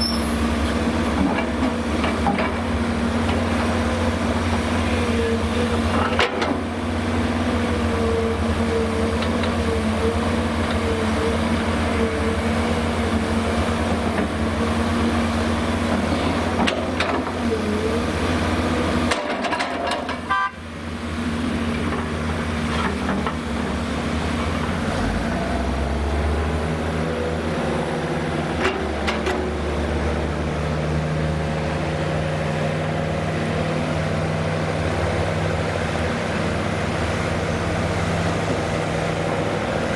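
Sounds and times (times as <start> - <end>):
brief high tone: 0.0 - 0.4
diesel engines running: 0.0 - 39.9.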